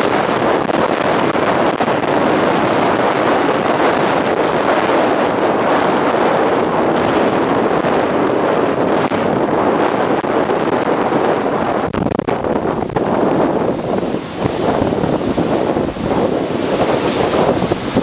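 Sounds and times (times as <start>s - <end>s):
strong wind on microphone: 0.0s - 18.0s.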